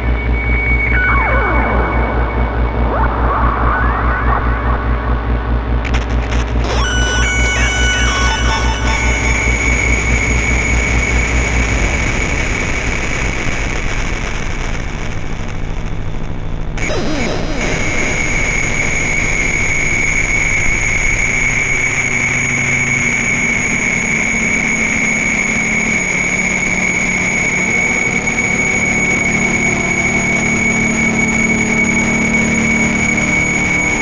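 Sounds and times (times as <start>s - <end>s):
low droning synth tones: 0.0s - 13.9s
high whistling tone: 0.2s - 5.4s, 6.7s - 11.3s.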